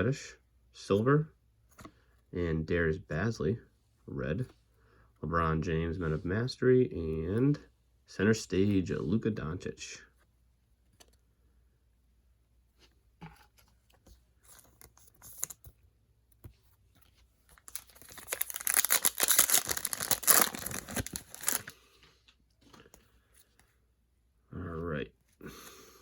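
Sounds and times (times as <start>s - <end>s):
cards handled clicks and rustles: 13.2s - 15.8s, 16.4s - 23.7s
foil wrapper tearing and crinkling: 17.6s - 21.7s.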